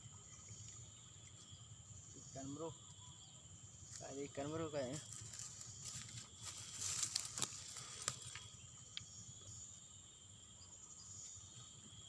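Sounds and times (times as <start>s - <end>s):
high-pitched insect chorus: 0.0s - 12.0s
rustling: 5.0s - 8.4s.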